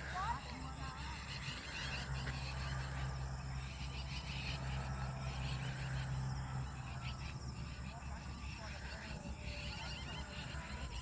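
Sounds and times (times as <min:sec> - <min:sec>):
frogs trilling: 0:00.0 - 0:11.0
insects chirping: 0:00.0 - 0:11.0
steady low hum: 0:00.0 - 0:11.0.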